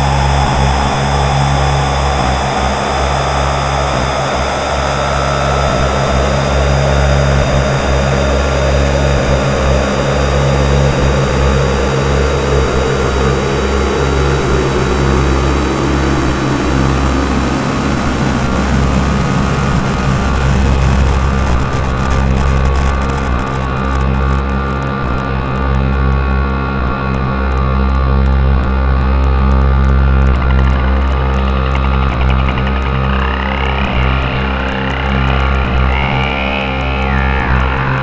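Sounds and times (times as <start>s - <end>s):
synthesizer noise drone: 0.0s - 38.0s.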